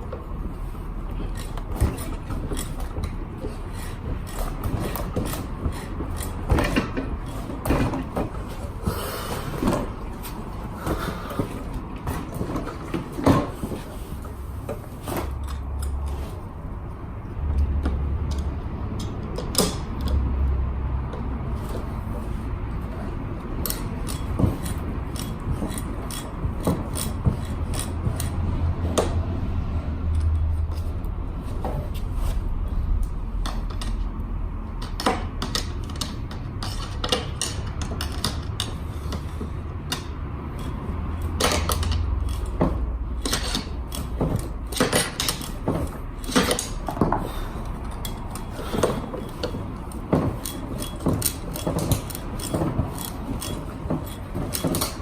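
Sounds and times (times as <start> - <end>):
metal tools clinking: 43.2 - 55.0.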